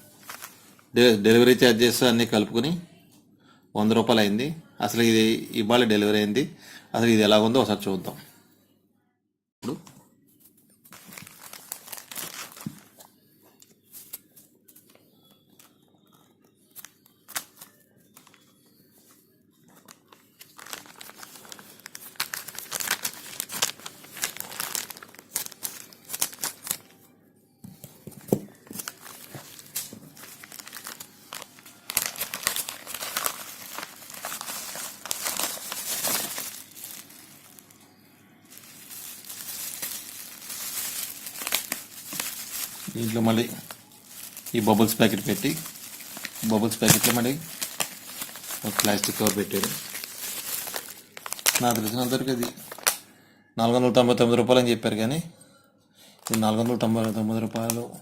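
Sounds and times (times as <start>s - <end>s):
plastic packaging crinkling and tearing: 0.0s - 0.9s, 10.9s - 14.3s, 16.7s - 18.6s, 19.7s - 27.0s, 28.1s - 53.0s, 56.2s - 57.8s.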